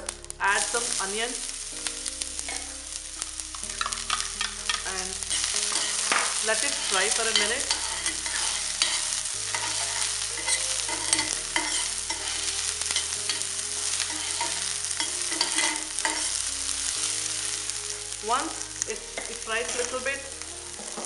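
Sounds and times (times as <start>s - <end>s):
onions sizzling in oil: 0.0s - 21.0s
spoon scraping and tapping pan: 3.8s - 16.4s.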